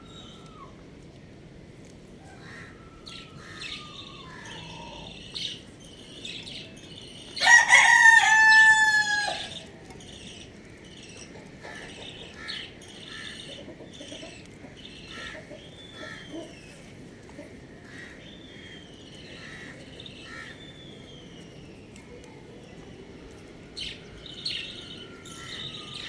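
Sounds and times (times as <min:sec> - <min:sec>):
small birds chirping: 0:02.4 - 0:08.4, 0:09.2 - 0:26.0
rooster crowing: 0:07.4 - 0:09.7.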